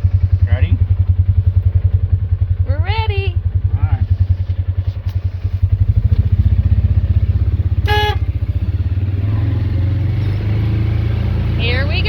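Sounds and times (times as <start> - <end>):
utility vehicle engine putter: 4.0 - 12.0.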